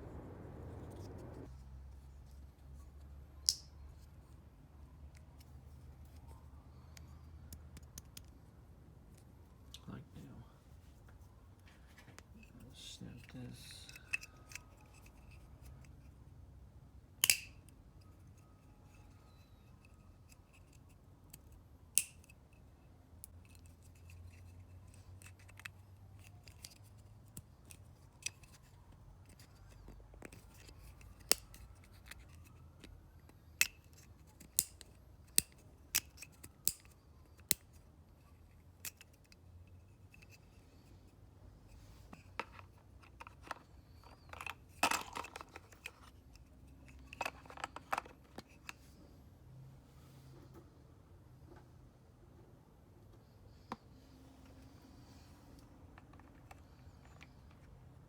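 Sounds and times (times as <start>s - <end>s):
faint low hum: 0.0s - 58.0s
plastic clicks and snaps: 3.4s - 3.7s, 17.2s - 17.8s.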